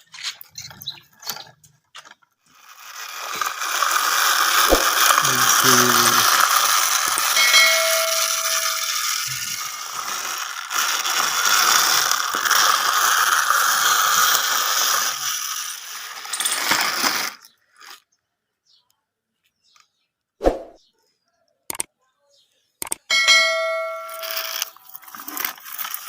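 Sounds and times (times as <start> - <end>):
toy mechanisms rattling: 0.0 - 18.0, 22.8 - 26.0.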